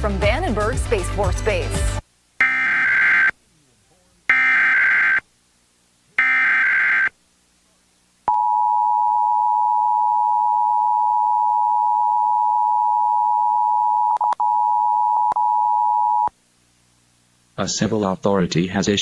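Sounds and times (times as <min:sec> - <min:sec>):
data burst tones: 0:02.4 - 0:03.4, 0:04.3 - 0:05.3, 0:06.2 - 0:07.2.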